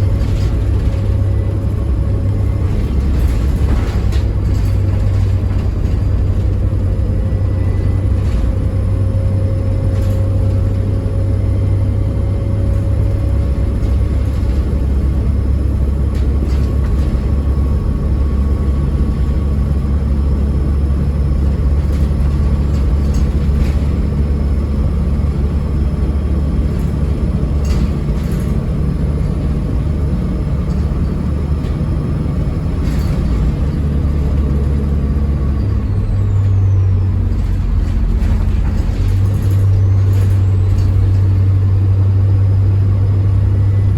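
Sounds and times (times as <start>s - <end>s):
knocks and rattles: 0.0s - 7.3s, 21.3s - 35.2s, 37.2s - 41.7s
bus diesel engine rumbling: 0.0s - 43.9s.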